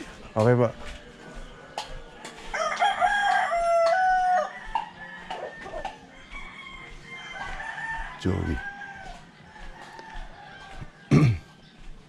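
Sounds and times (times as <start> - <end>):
rooster crowing: 2.5 - 11.5.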